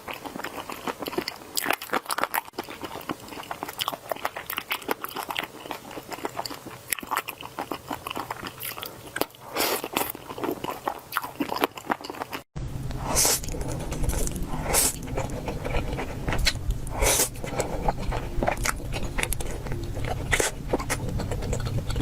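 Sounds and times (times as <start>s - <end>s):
crunching and chewing crisp food: 0.0s - 22.0s.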